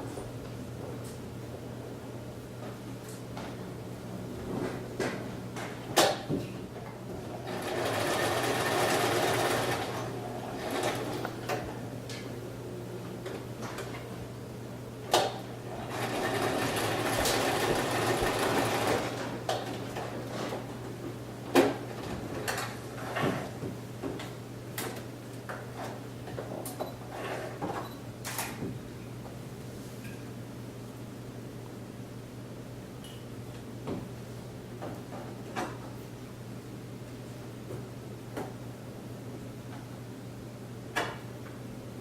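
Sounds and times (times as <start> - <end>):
electric sewing machine running: 7.3 - 11.3, 15.7 - 19.2.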